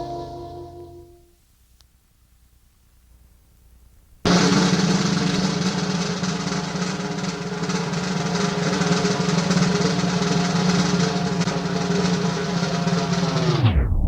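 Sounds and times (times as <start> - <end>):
drum roll: 4.3 - 14.0.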